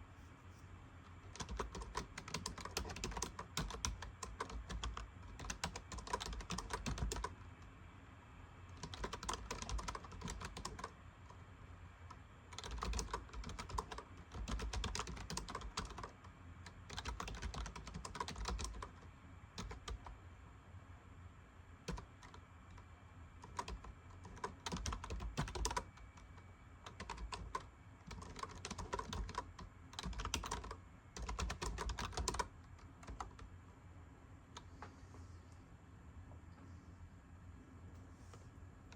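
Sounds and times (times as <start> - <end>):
typing on computer keyboard: 1.3 - 7.3, 8.8 - 10.9, 12.5 - 19.0, 19.6 - 20.1, 21.9 - 22.4, 23.4 - 33.5.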